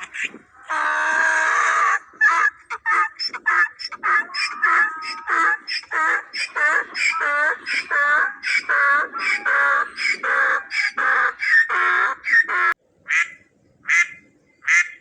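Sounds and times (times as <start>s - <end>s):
ducks quacking: 0.0s - 15.0s.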